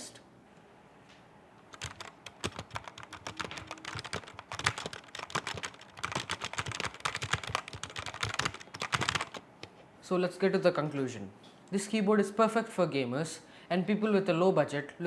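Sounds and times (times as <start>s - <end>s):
mechanical keyboard key clacks: 1.7s - 9.4s.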